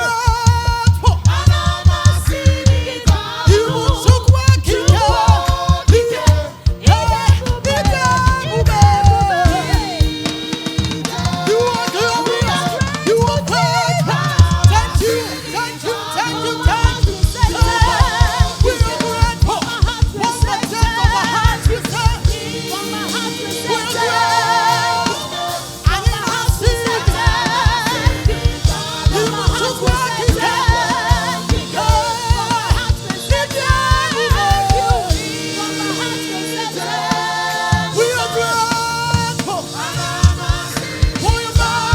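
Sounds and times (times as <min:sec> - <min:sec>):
kick-drum beat: 0:00.0 - 0:15.4, 0:16.0 - 0:35.6, 0:39.2 - 0:41.9
gospel choir singing: 0:00.0 - 0:41.9
live band playing: 0:00.0 - 0:41.9.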